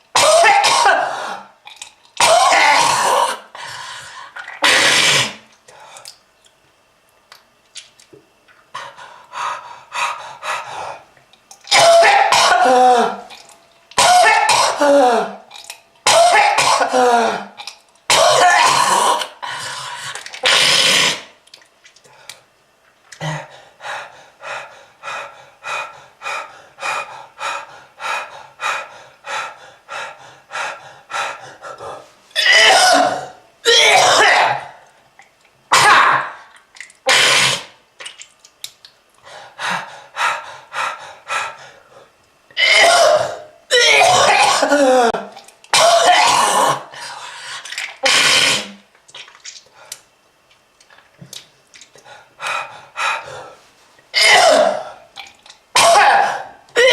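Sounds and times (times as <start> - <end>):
person coughing heavily: 0.2 - 1.5, 2.2 - 3.4, 11.7 - 13.3, 14.0 - 15.4, 16.1 - 17.5, 18.1 - 19.3, 32.4 - 34.8, 42.6 - 46.9, 54.2 - 55.0, 55.8 - 56.9.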